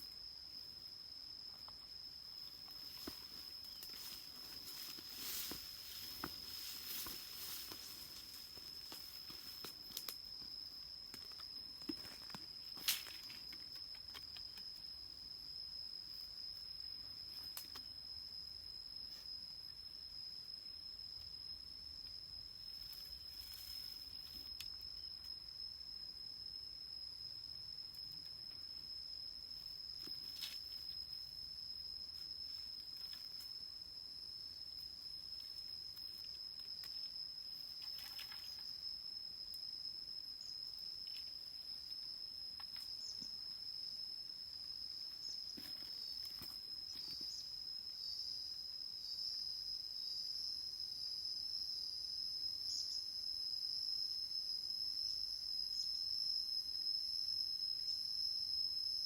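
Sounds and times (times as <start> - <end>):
insect trilling: 0.0 - 57.2.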